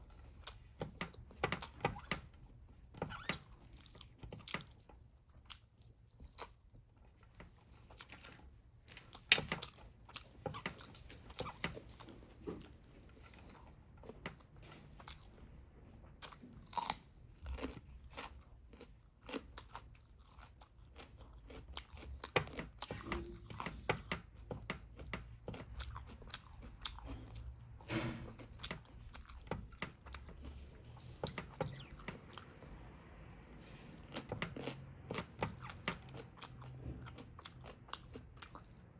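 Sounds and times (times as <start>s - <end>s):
person crunching and chewing: 16.2s - 33.0s, 33.6s - 38.9s.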